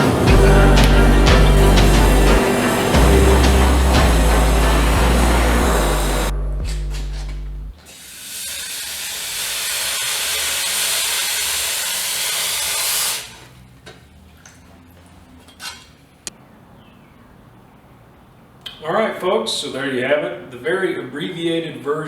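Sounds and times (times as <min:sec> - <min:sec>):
rushing air hiss: 0:00.0 - 0:06.3, 0:07.9 - 0:13.4.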